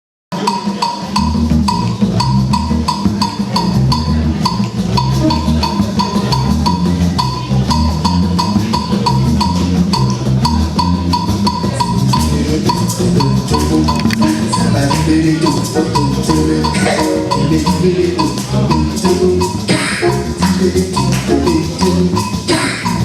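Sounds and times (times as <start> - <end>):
drum beat: 0.4 - 23.0
deep bass strokes: 1.2 - 23.0
short high tone: 15.6 - 22.0.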